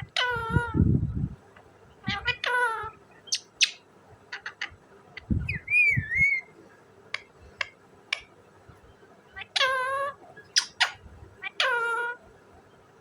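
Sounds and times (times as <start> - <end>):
parakeet sharp chirps: 2.0 - 6.5, 9.4 - 12.2
parakeet wavering whistle: 5.5 - 6.5.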